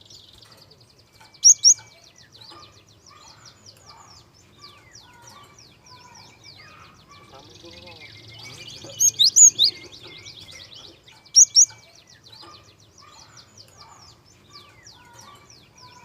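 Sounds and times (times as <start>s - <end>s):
songbirds chirping and twittering: 0.0s - 16.0s
clear whistled bird notes: 8.0s - 11.8s.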